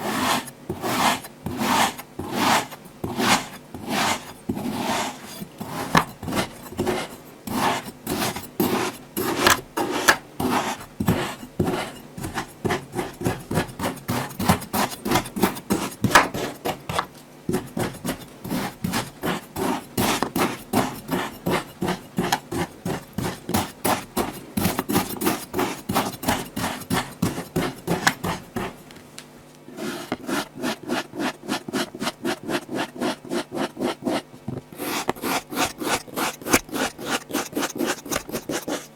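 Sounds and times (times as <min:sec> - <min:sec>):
tool cutting crunchy sand: 0:34.8 - 0:38.9.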